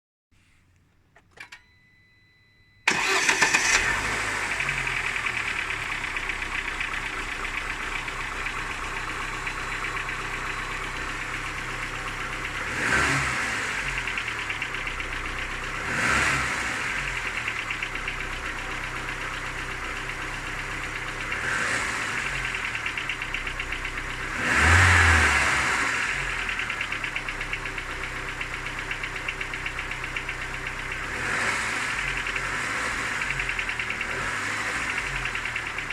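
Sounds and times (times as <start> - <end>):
engine throttle blips: 1.0 - 35.9
car engine knocking: 4.3 - 25.2, 26.0 - 35.9.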